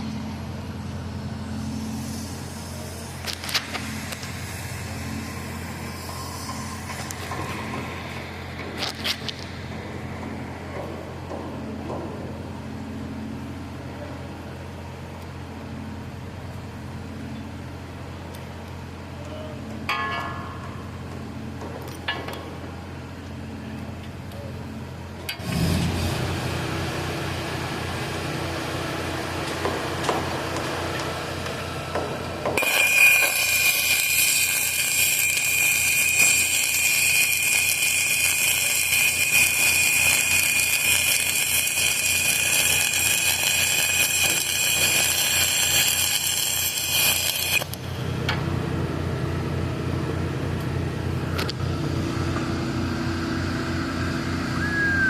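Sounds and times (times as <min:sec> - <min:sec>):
engine droning: 0:00.0 - 0:33.1, 0:47.6 - 0:55.0
welding arc hissing and crackling: 0:01.5 - 0:11.3, 0:32.5 - 0:48.1.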